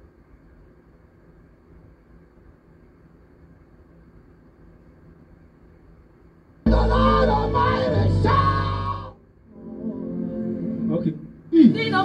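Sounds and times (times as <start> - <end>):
person singing: 6.7 - 10.9, 11.6 - 12.0.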